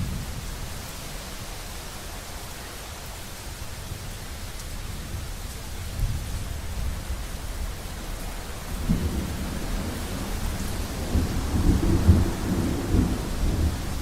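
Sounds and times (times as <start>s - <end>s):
rain hiss: 0.0s - 14.0s
rolling thunder: 5.9s - 14.0s.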